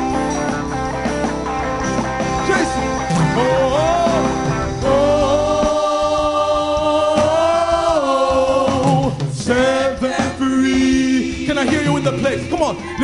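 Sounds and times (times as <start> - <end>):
live band playing: 0.0 - 13.0
choir voices: 2.4 - 13.0
person singing long sliding notes: 3.1 - 9.2.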